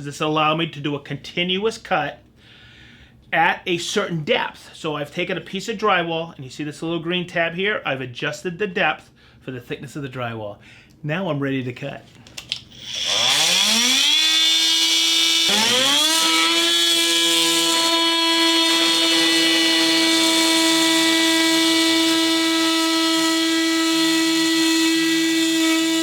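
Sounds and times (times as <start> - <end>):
oscillating multitool cutting drywall: 12.5 - 26.0.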